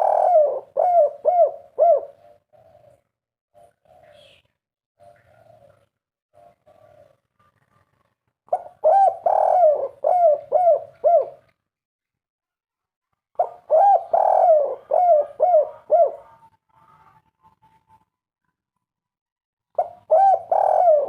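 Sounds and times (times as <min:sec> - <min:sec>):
dove cooing: 0:00.0 - 0:07.8, 0:08.5 - 0:11.6, 0:13.4 - 0:17.2, 0:19.8 - 0:21.0.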